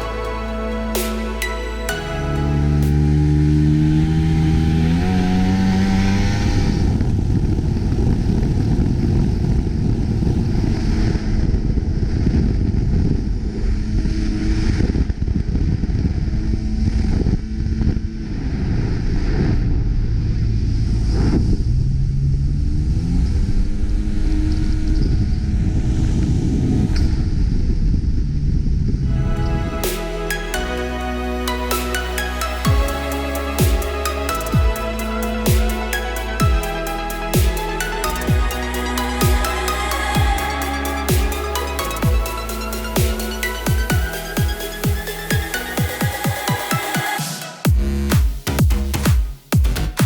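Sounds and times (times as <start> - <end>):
background music: 0.0 - 6.7, 29.1 - 50.0.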